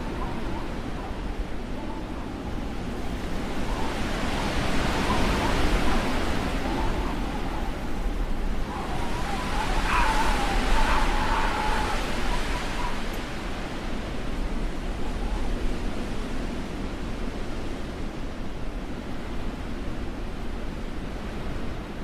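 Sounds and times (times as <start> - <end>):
howling wind whistle: 0.0 - 16.8
blizzard wind rushing: 0.0 - 18.0.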